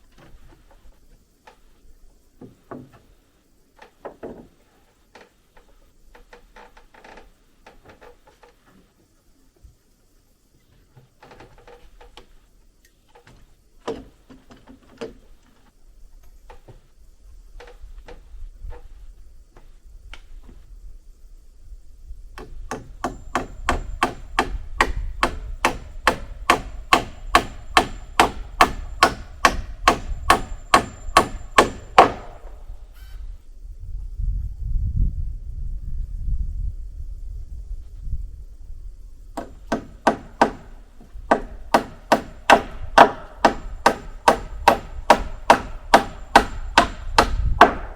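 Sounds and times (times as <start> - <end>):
hammer driving nails into wood: 22.4 - 32.5, 39.4 - 47.9.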